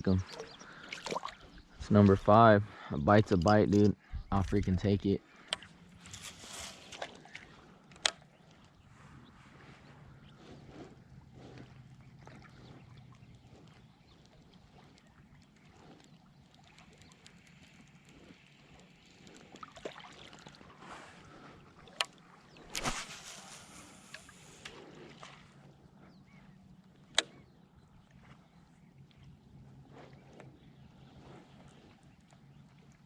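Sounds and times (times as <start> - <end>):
water lapping around float tube: 0.0 - 2.4, 5.2 - 33.0
short rush of noise: 22.8 - 24.4.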